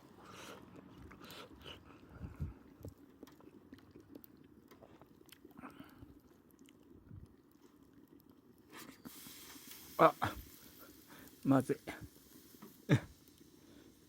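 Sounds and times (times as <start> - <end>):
person chewing food: 0.1 - 9.0.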